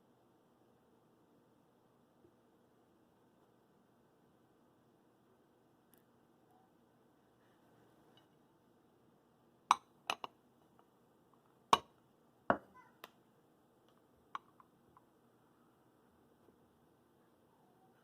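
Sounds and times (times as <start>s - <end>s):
kitchenware clinking and tapping: 9.7s - 10.4s, 12.5s - 12.7s, 14.4s - 14.7s.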